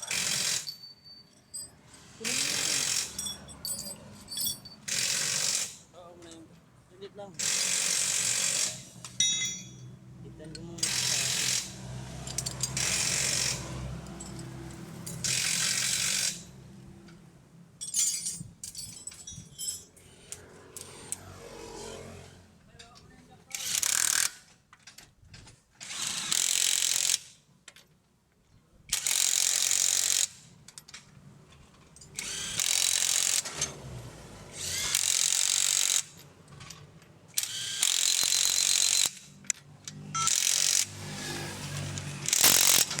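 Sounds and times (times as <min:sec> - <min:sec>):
power tool bursts: 0:04.9 - 0:05.8, 0:07.4 - 0:08.9, 0:10.8 - 0:11.8, 0:37.4 - 0:39.2, 0:40.2 - 0:43.0.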